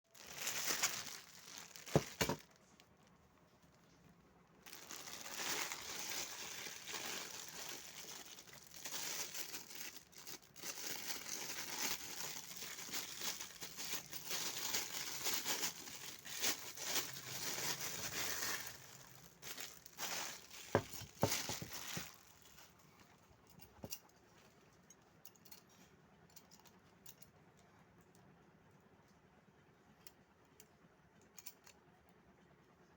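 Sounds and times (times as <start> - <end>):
plastic wrapping crinkling: 0.0 - 23.1.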